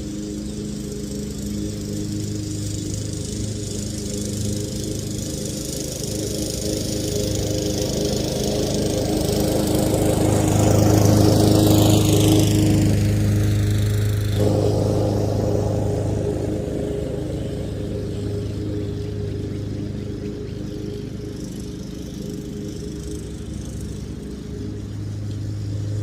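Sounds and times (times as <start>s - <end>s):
lawn mower engine running: 0.0s - 24.9s.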